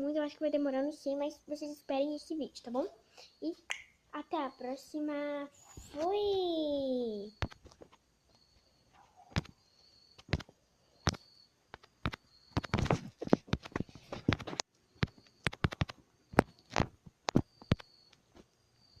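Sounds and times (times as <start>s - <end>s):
sharp clicks and knocks: 10.2s - 18.5s.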